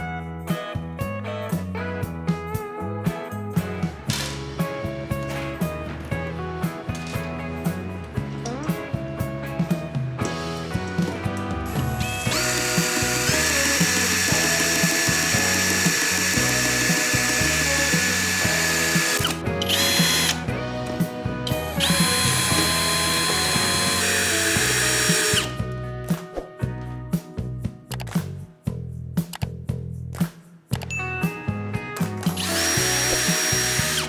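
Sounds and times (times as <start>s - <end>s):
background music: 0.0s - 34.0s
electric power tool whine: 11.7s - 25.7s, 32.2s - 34.0s.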